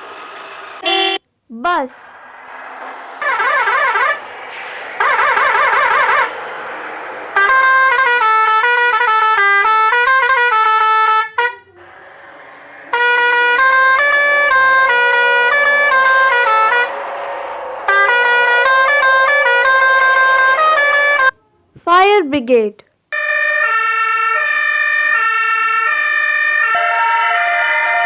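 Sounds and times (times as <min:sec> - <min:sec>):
bus musical horn tune: 0:00.8 - 0:01.2, 0:07.4 - 0:11.8, 0:12.9 - 0:16.9, 0:17.9 - 0:21.7.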